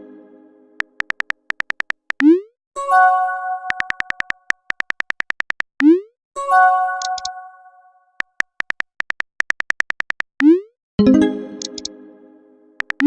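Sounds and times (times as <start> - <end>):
keyboard tap clicks: 0.8 - 2.3, 3.7 - 5.9, 7.0 - 7.3, 8.2 - 10.5, 11.6 - 11.9, 12.8 - 13.0
chiming notification tone: 11.0 - 11.9.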